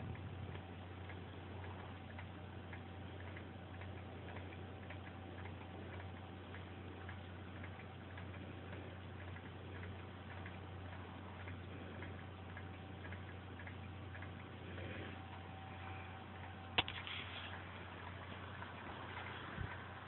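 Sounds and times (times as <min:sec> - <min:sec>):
low hum: 0:00.0 - 0:20.0
faint light ticks: 0:00.1 - 0:14.6.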